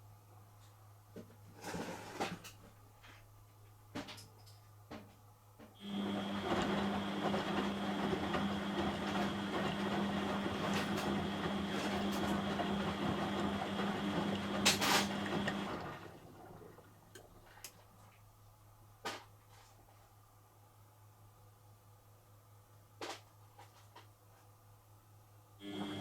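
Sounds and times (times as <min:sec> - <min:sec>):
washing machine hum and whine: 0:04.9 - 0:18.8, 0:25.3 - 0:26.0.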